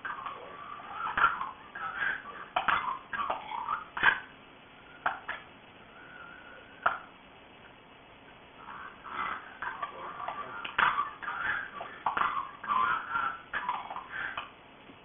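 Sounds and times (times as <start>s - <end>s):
animal squeaky calls: 0.0s - 4.1s.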